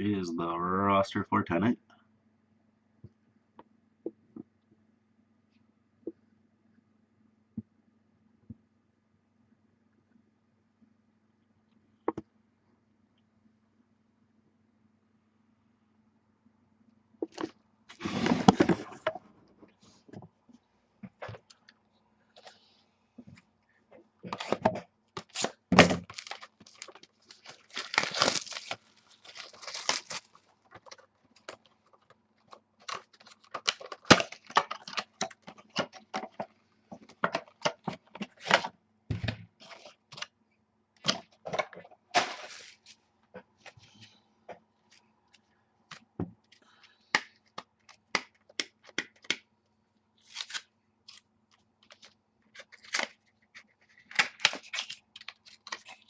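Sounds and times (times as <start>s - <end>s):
wrapping and cardboard tearing: 25.2s - 32.0s, 50.2s - 51.2s, 51.9s - 56.0s.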